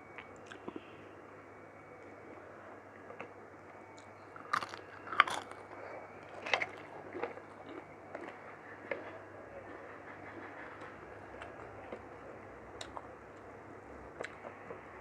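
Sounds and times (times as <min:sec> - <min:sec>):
person chewing food: 0:02.9 - 0:03.4, 0:04.0 - 0:09.1, 0:12.8 - 0:13.5, 0:14.2 - 0:14.9.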